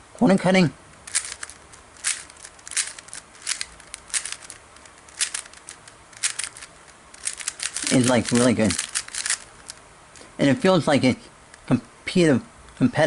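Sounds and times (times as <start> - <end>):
puzzle cube plastic clicking: 1.0 - 10.7.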